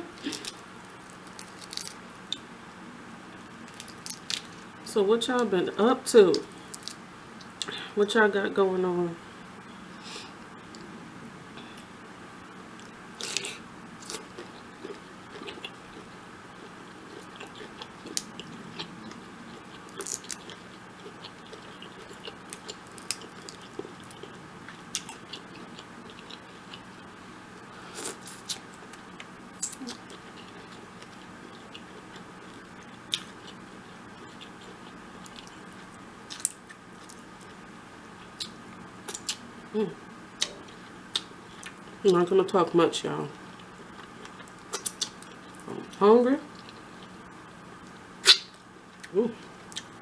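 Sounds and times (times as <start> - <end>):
chewing with crunches: 12.8 - 27.1, 27.7 - 37.6, 38.2 - 39.4, 43.6 - 47.1
wet mouth sounds: 48.2 - 48.5.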